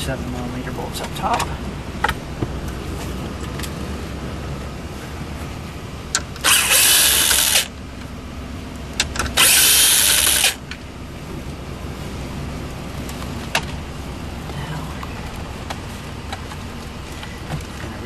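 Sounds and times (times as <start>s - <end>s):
power driver running: 6.2s - 7.8s, 9.0s - 10.7s.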